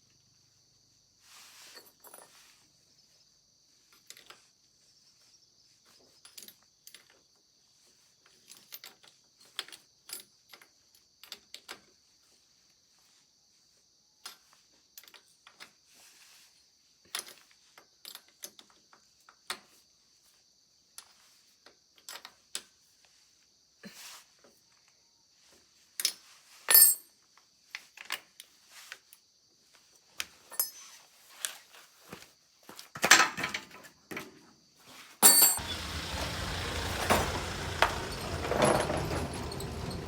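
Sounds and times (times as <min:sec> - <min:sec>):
hand tools and metal parts clicking: 0:30.2 - 0:31.0, 0:35.2 - 0:40.0
metal parts clattering: 0:35.2 - 0:40.0.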